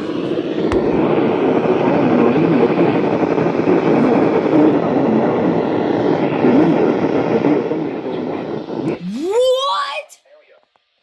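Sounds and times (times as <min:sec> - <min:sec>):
radio static hiss: 0:10.2 - 0:11.0.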